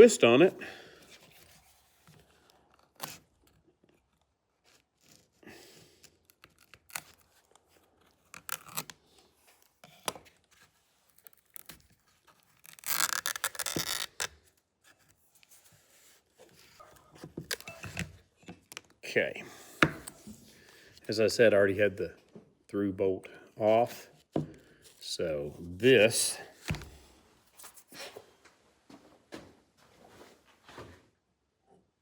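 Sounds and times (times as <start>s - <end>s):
tape tearing rasp: 2.9s - 3.3s, 4.6s - 9.2s, 11.2s - 15.1s.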